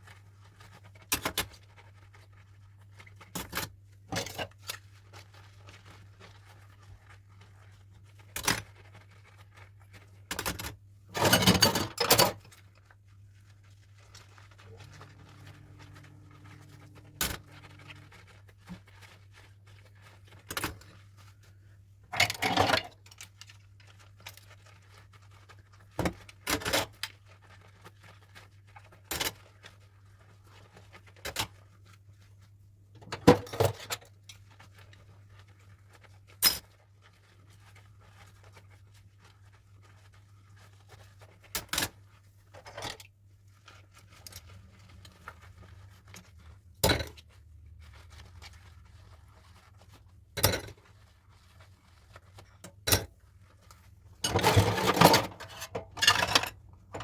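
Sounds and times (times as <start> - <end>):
low steady hum: 14.3 - 19.2
dishes clinking and clattering: 22.1 - 22.9, 54.2 - 57.0.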